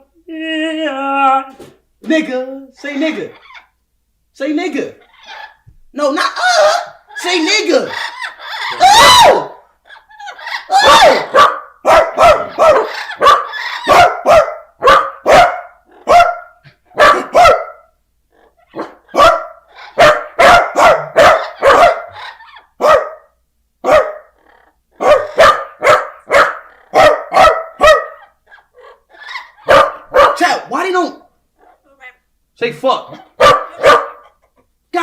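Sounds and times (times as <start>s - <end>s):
dog barking loudly: 6.3s - 18.0s, 18.7s - 24.4s, 25.0s - 30.7s, 33.1s - 34.4s.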